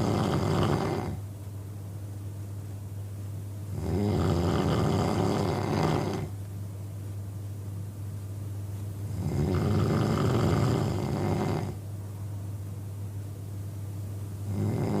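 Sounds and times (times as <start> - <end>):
man snoring: 0.0 - 1.2, 3.7 - 6.3, 9.1 - 11.8, 14.5 - 15.0
steady low hum: 0.0 - 15.0.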